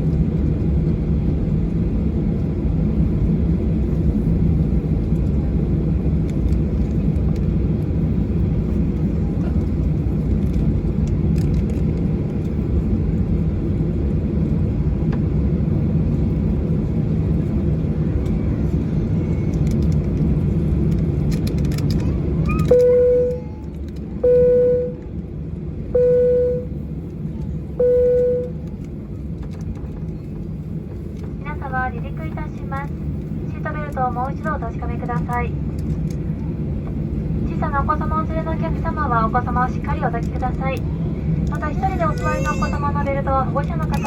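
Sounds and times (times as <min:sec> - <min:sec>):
airplane cabin rumble: 0:00.0 - 0:44.0
single-pitched beep tone: 0:22.6 - 0:23.5, 0:24.2 - 0:25.0, 0:26.0 - 0:26.7, 0:27.8 - 0:28.6.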